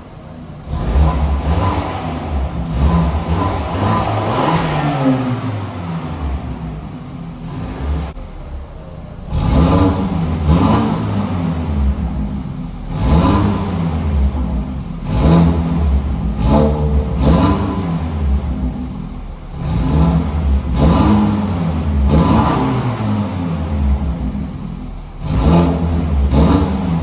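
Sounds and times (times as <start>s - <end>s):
car engine revving: 0.0s - 27.0s.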